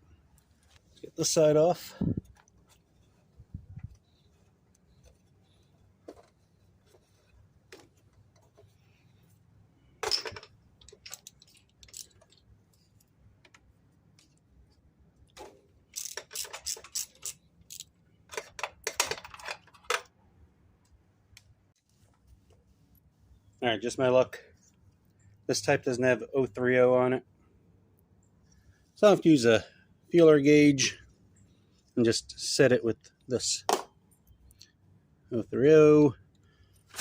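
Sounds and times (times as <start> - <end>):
metal tools clinking: 10.0 - 12.4, 15.9 - 20.1
ratchet wrench clicking: 15.9 - 18.5.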